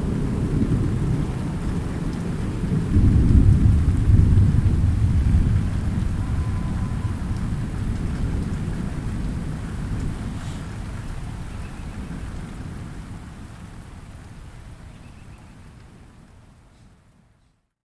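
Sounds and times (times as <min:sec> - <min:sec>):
thunder rumbling: 0:00.0 - 0:10.0
light rain falling: 0:00.0 - 0:17.8.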